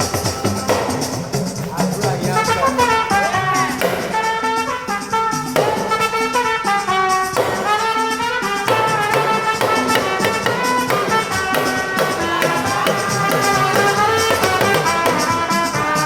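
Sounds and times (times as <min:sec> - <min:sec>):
upbeat music with brass horns: 0:00.0 - 0:16.0.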